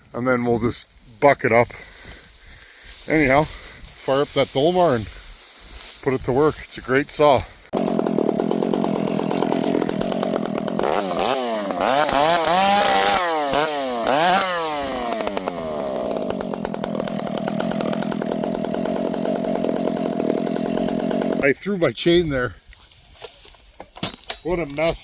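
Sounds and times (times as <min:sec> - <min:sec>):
chainsaw revving: 0:02.8 - 0:05.2, 0:07.2 - 0:21.4.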